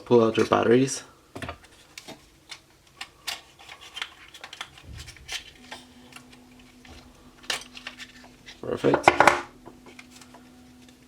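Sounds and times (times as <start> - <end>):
handheld recorder being handled: 1.9 - 8.6.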